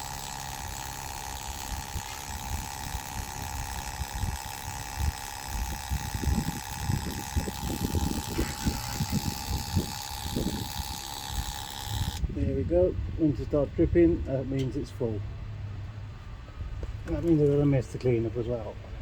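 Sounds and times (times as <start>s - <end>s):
oil pump strokes: 0.0s - 12.2s
steady background hum: 0.0s - 19.0s.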